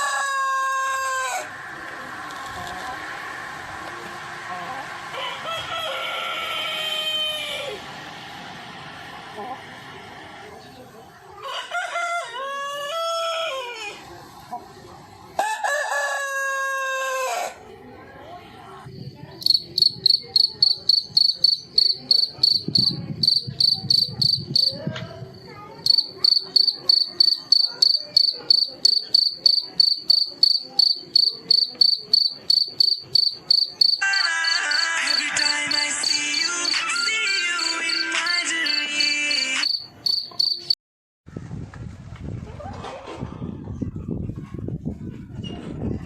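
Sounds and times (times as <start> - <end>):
rooster crowing: 0.0 - 1.6, 5.1 - 7.9, 11.4 - 14.0, 15.4 - 17.6
cricket chirping: 19.0 - 24.8, 25.8 - 34.8, 38.7 - 40.8.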